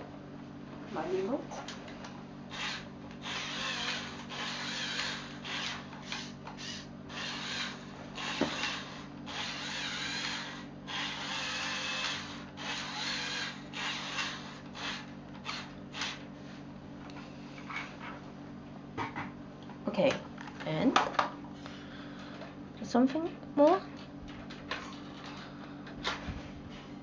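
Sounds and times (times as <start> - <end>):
steady low hum: 0.0 - 27.0
toy motors and gears whirring: 2.5 - 16.3, 24.5 - 26.2.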